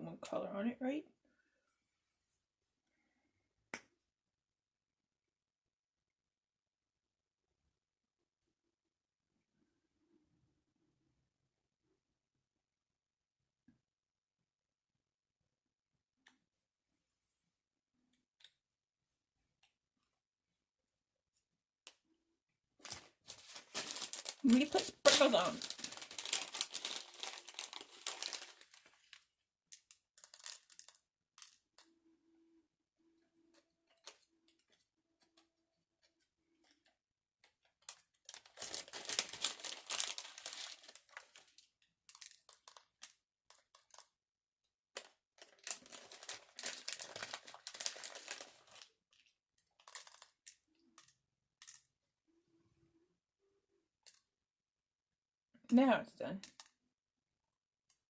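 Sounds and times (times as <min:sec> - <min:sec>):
plastic packaging crinkling: 0:22.8 - 0:31.6, 0:37.8 - 0:44.0, 0:45.0 - 0:50.6.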